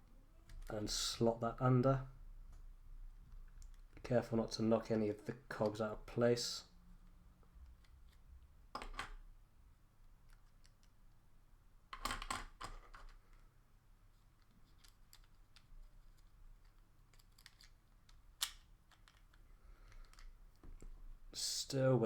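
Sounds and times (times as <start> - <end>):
plastic toy parts clicking: 14.4 - 20.4.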